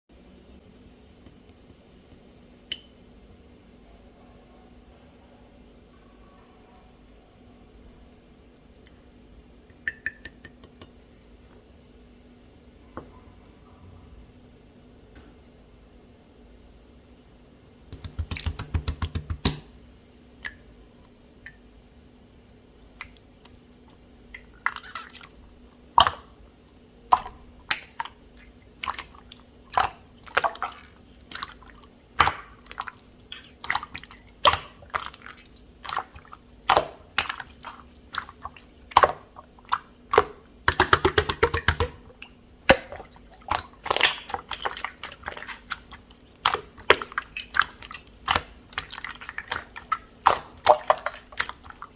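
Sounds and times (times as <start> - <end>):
faint steady hum: 0.1 - 51.9
slime sticky clicks and wet pops: 17.9 - 19.7, 35.8 - 51.8.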